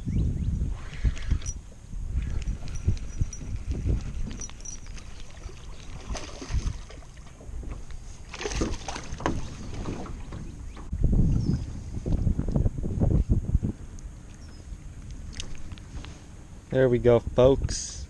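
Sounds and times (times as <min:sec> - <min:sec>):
wind buffeting microphone: 0:00.0 - 0:18.0
water lapping at boat hull: 0:02.1 - 0:12.2.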